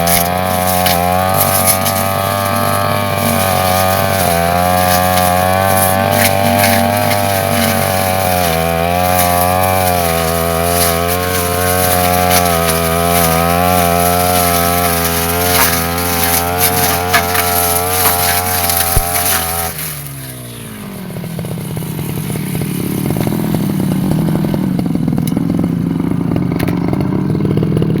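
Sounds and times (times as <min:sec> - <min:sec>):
debris striking cutting head: 0:00.0 - 0:20.3
brush cutter engine running: 0:00.0 - 0:28.0.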